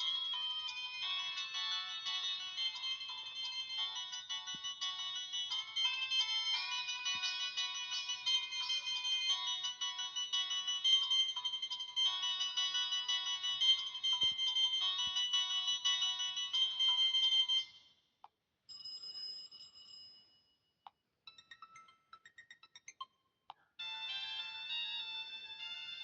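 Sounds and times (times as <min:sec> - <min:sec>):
phone ringtone melody: 0:00.0 - 0:17.8, 0:23.8 - 0:26.0.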